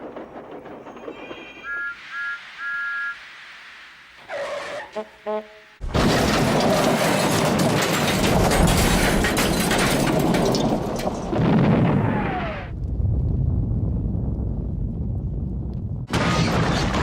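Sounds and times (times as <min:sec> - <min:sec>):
rumbling crackling boom: 0:00.0 - 0:02.2, 0:05.8 - 0:17.0.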